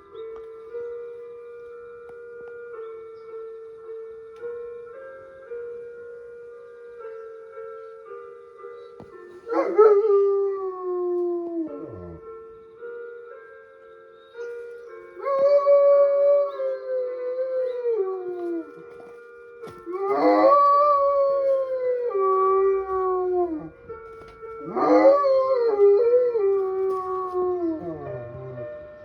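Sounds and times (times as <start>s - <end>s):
dog howling: 19.9s - 23.8s, 24.6s - 28.6s.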